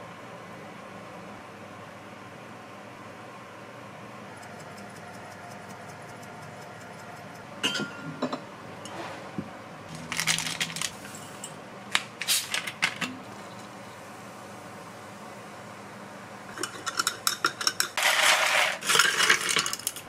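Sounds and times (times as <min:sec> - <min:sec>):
dishes and utensils clinking: 0:07.6 - 0:08.5, 0:16.5 - 0:20.0.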